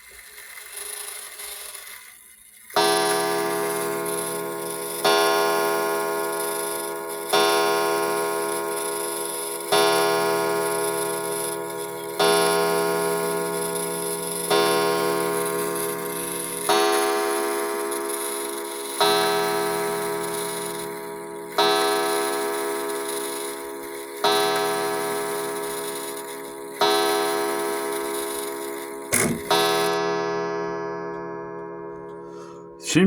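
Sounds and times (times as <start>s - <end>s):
clock mallet striking gong: 26.8s - 30.0s
short knock: 29.1s - 29.5s.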